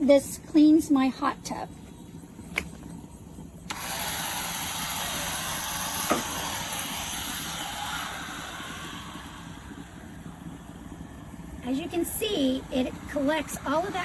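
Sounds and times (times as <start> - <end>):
handheld vacuum hissing in water: 3.7 - 10.8.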